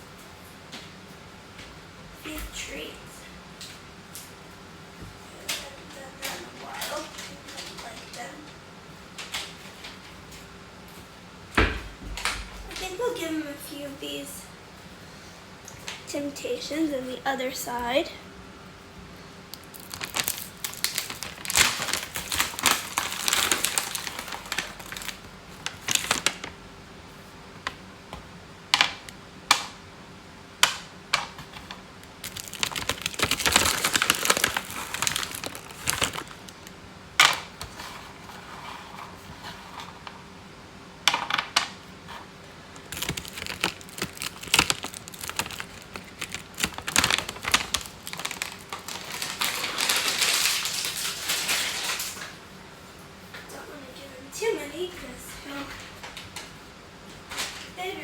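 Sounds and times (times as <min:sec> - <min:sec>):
treat package crinkling and clicking: 0:19.5 - 0:26.6, 0:30.6 - 0:37.8, 0:42.7 - 0:52.4.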